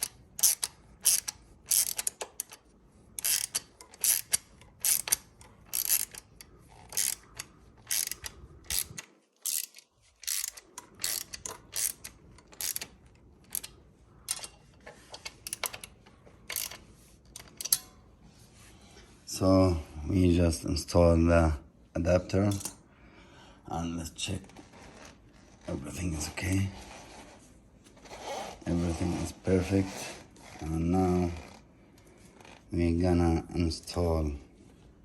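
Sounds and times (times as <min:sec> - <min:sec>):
ratchet wrench clicking: 0:00.0 - 0:02.6, 0:03.2 - 0:13.7, 0:14.3 - 0:17.9.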